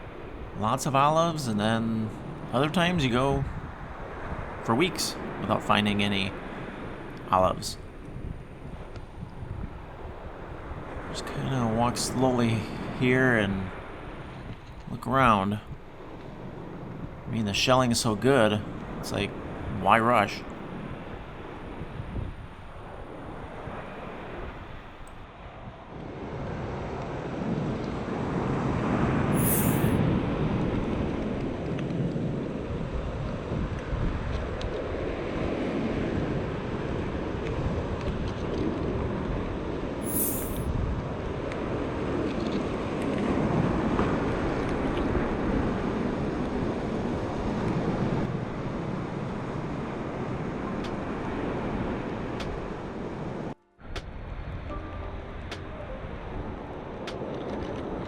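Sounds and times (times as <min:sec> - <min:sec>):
wind buffeting microphone: 0:00.0 - 0:15.0, 0:18.6 - 0:58.0
short high hisses: 0:29.4 - 0:30.0, 0:40.0 - 0:40.7.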